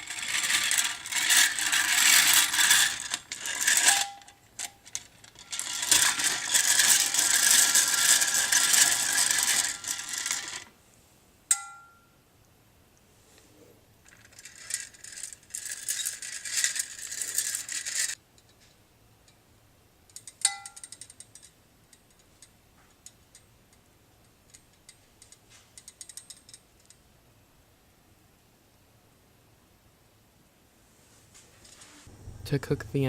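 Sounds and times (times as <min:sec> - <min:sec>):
ringing clink: 0:11.5 - 0:12.2.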